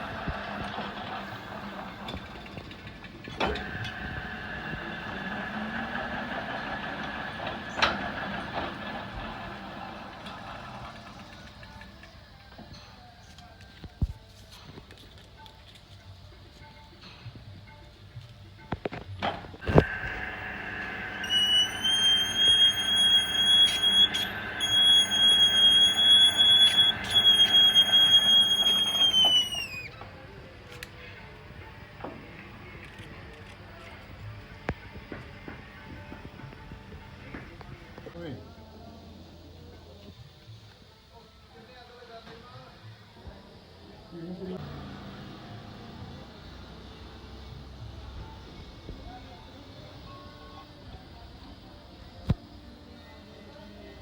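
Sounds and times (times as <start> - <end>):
lathe whining: 0.0 - 11.6, 19.6 - 30.1
high-pitched squeal from lathe: 19.6 - 30.0.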